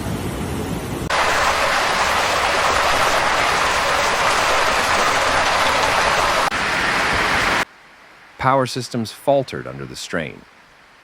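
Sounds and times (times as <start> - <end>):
heavy rain pouring: 1.0 - 7.7.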